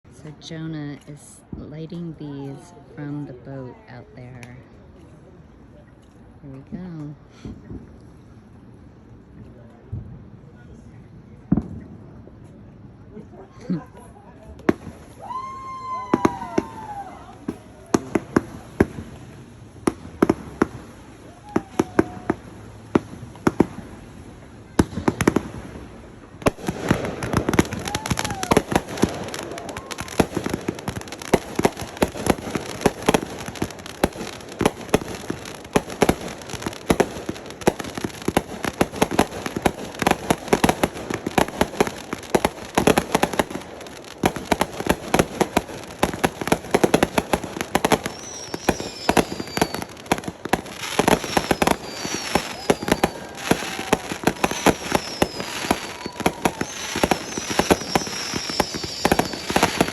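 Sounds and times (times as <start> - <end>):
fireworks bangs and crackles: 0.0 - 59.9
falling firework whistles: 14.8 - 23.8, 26.5 - 41.8, 46.8 - 59.9.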